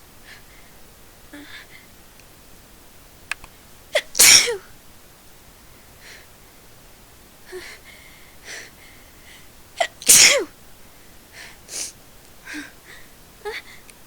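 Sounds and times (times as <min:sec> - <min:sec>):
person sneezing: 0:04.0 - 0:04.6, 0:09.8 - 0:10.5.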